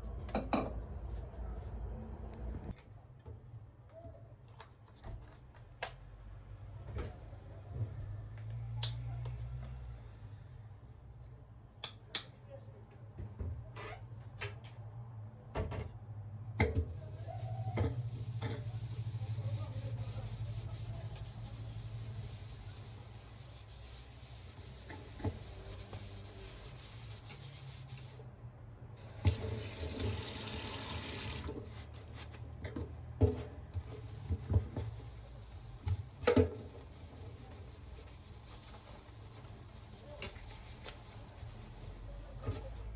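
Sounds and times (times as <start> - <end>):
water running from a tap: 29.0 - 31.6.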